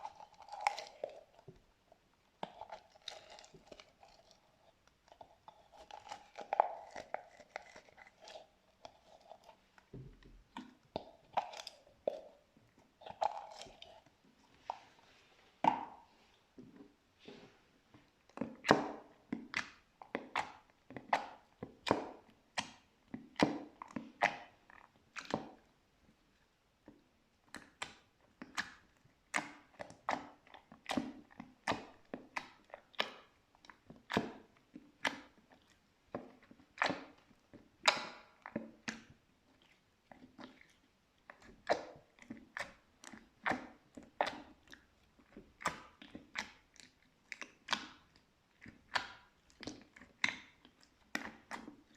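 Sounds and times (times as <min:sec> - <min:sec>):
slime squishing wet pops: 0:15.6 - 0:16.1, 0:18.3 - 0:25.6, 0:27.5 - 0:51.9.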